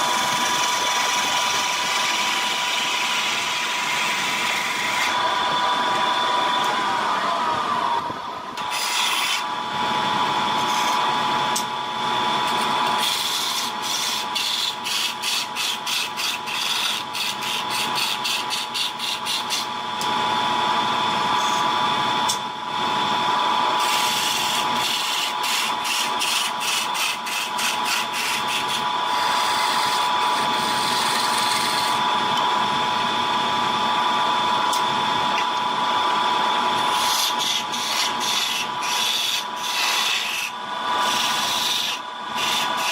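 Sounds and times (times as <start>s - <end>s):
turning tool cutting wood: 0.0s - 7.0s, 8.6s - 9.5s, 12.5s - 19.7s, 23.8s - 32.2s, 36.7s - 42.9s
wood lathe whining: 0.0s - 22.2s, 22.9s - 42.9s.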